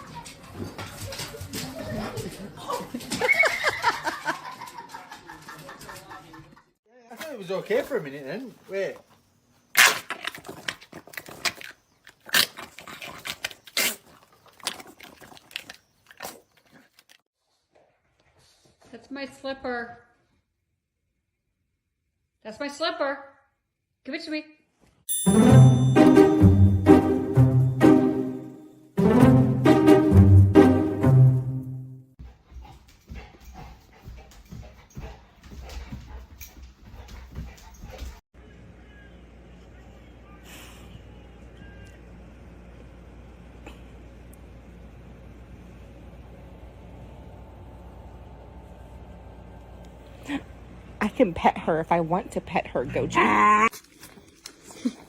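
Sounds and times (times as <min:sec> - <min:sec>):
dog chewing and tearing: 0:09.8 - 0:17.2, 0:53.7 - 0:55.0.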